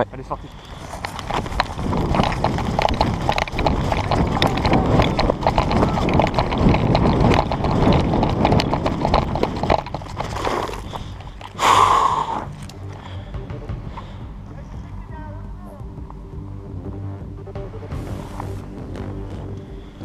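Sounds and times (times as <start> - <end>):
running footfalls: 0.4 - 14.2.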